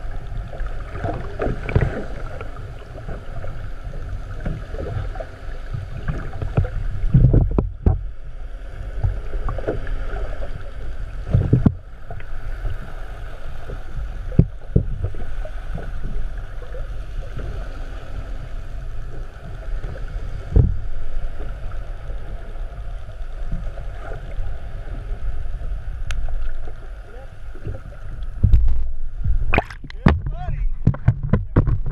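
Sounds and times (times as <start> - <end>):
boat engine rumble: 0.0 - 31.9
wind on microphone: 5.8 - 8.2, 11.2 - 11.8, 27.6 - 31.9
heavy thumps: 28.4 - 31.9.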